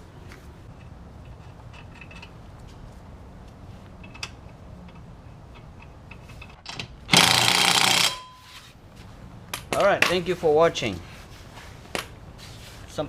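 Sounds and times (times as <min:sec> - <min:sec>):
impact wrench hammering: 0:06.7 - 0:08.4.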